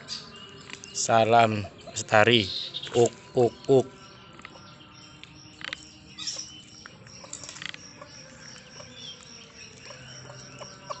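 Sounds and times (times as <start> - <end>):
bird chirps and clicks: 0.1 - 11.0
high-pitched insect trill: 3.7 - 11.0.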